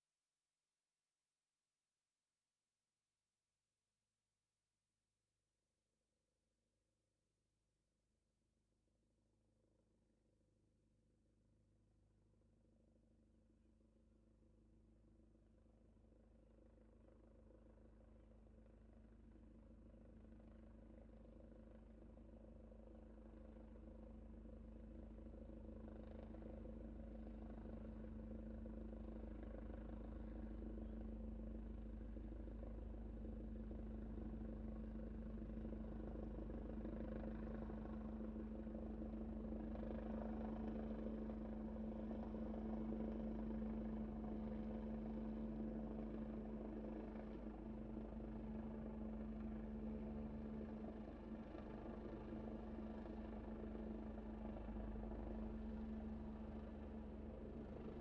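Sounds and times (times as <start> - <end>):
helicopter rotor and engine drone: 13.6 - 58.0.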